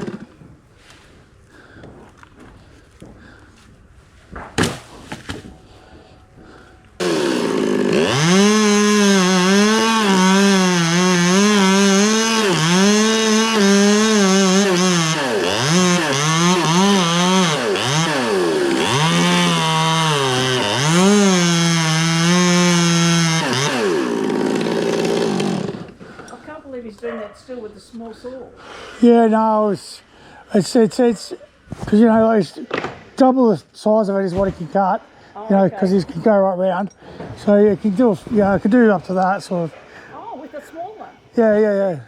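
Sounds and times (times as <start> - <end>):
chainsaw cutting at full throttle: 0.0 - 0.3, 7.0 - 26.0.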